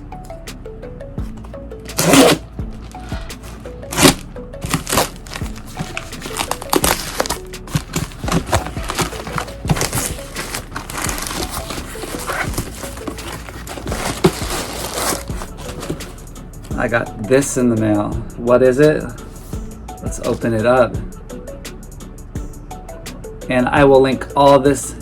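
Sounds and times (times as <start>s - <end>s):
background music: 0.0s - 25.0s
packaging crinkling and rustling: 1.9s - 16.3s.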